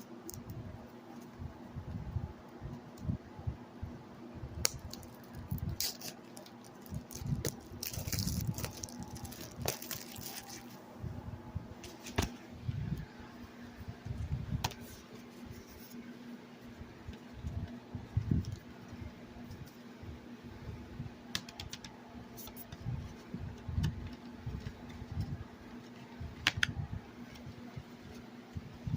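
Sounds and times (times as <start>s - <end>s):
packaging crackling: 4.6s - 10.8s.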